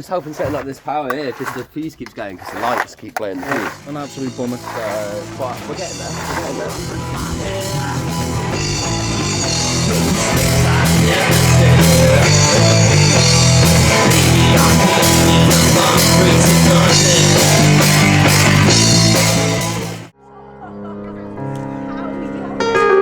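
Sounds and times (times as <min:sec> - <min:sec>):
rock music with drums and guitar: 0:03.7 - 0:20.1.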